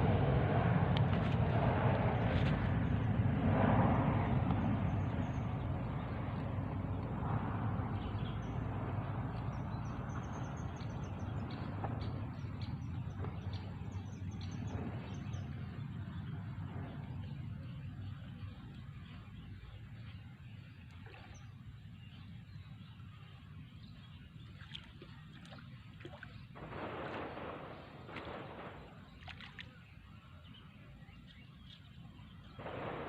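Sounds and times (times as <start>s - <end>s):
low motor rumble: 0.0s - 33.0s
small birds chirping: 7.8s - 33.0s.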